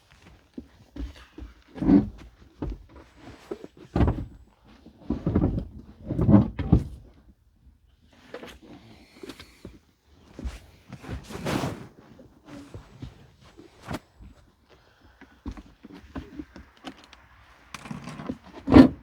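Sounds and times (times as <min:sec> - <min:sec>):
knocks and thunks: 0:04.0 - 0:04.4.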